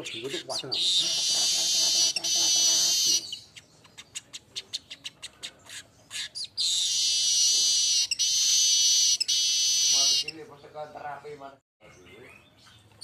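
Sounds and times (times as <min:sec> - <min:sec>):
bird buzzy sizzling wheeze: 0:00.8 - 0:03.3.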